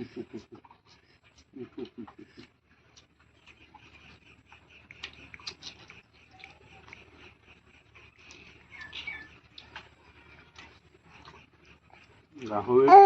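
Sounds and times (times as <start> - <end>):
person chewing: 4.8 - 7.0
wet mouth clicks and smacks: 4.8 - 7.0.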